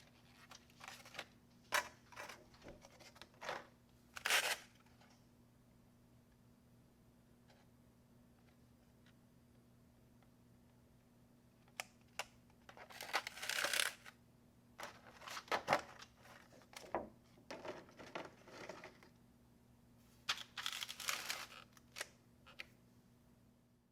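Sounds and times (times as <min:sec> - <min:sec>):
faint steady hum: 0:00.0 - 0:23.9
packaging crinkling and rustling: 0:20.3 - 0:22.1.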